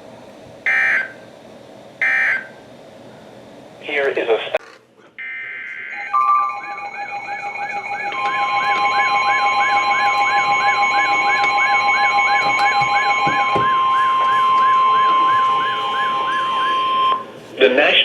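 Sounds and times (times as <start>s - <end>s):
steady alarm tone: 0.7s - 1.2s, 2.0s - 2.6s, 5.2s - 17.4s
warbling siren-like alert: 5.2s - 17.3s
higher steady tone: 6.0s - 17.4s.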